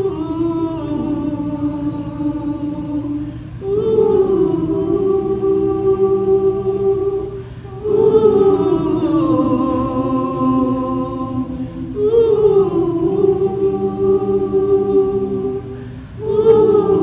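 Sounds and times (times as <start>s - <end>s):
voices singing wordless melody: 0.0s - 17.0s.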